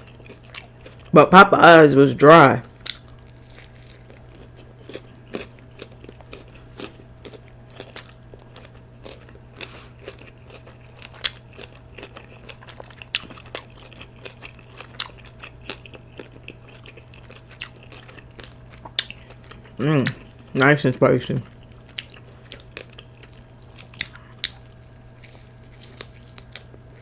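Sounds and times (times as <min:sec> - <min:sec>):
chewing with wet mouth smacks: 0:00.0 - 0:01.1, 0:02.6 - 0:20.7, 0:21.4 - 0:27.0
crunching of fried breading: 0:00.0 - 0:01.2, 0:01.8 - 0:27.0.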